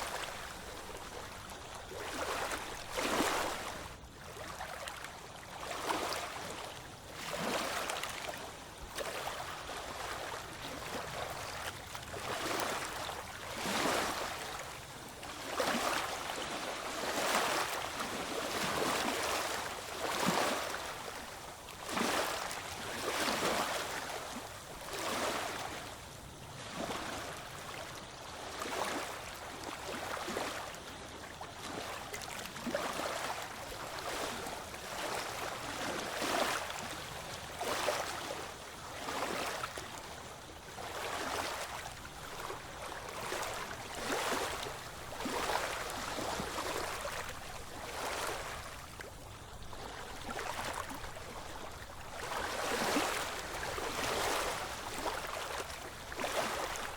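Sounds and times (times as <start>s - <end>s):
small waves washing in: 0.0s - 56.9s.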